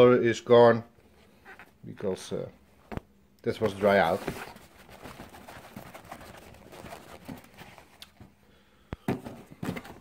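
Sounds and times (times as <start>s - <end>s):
soft rustling of handling: 0.9s - 8.4s.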